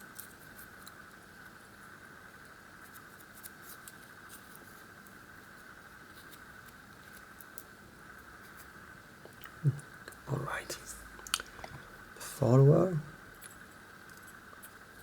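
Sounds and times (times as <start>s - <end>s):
small metallic clicks and scratches: 0.0s - 1.2s, 6.1s - 7.7s
faint steady hiss: 0.0s - 15.0s.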